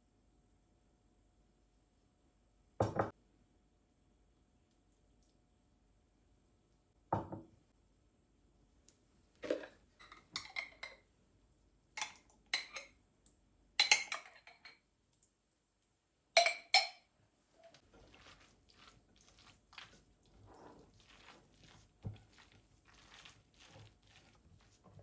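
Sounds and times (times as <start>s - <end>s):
kitchenware clinking and knocking: 2.8s - 3.1s, 7.2s - 7.5s, 9.4s - 11.0s, 13.8s - 14.8s.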